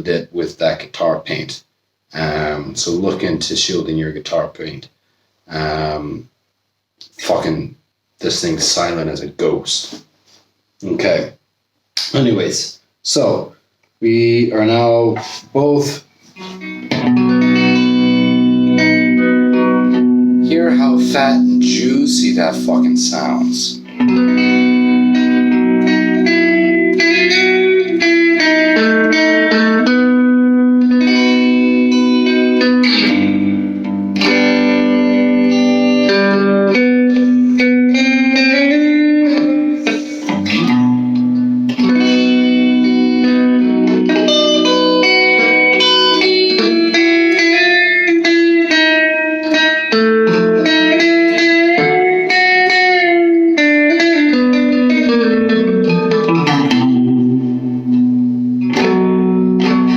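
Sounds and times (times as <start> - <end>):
electric guitar melody: 16.3 - 59.9.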